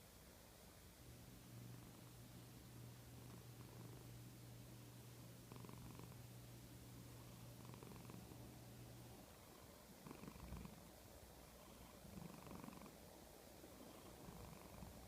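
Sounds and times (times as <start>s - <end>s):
faint low snoring: 3.1s - 4.2s, 5.2s - 6.3s, 7.1s - 13.0s, 13.7s - 15.0s.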